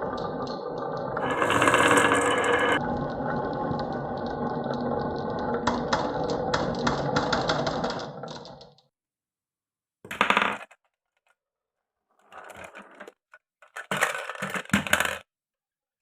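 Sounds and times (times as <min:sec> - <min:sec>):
marbles clicking against wood: 0:00.0 - 0:08.7
marbles rolling on wooden track: 0:00.0 - 0:08.8, 0:10.1 - 0:10.8, 0:12.3 - 0:15.3.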